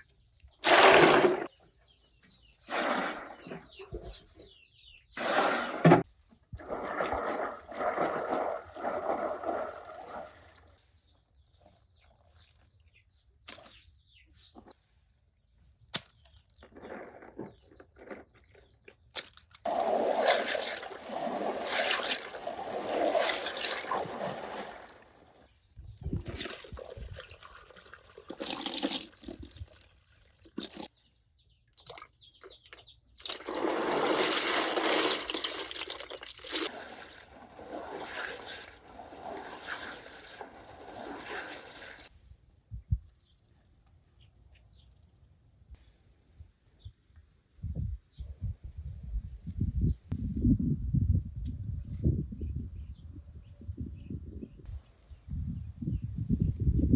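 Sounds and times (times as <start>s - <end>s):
water splashing and trickling: 5.2s - 11.0s, 16.4s - 31.0s, 31.6s - 42.1s.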